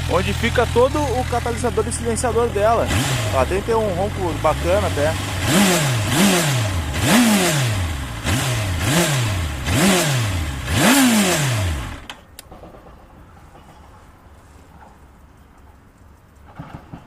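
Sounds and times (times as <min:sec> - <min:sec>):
motorcycle engine revving: 0:00.0 - 0:12.3.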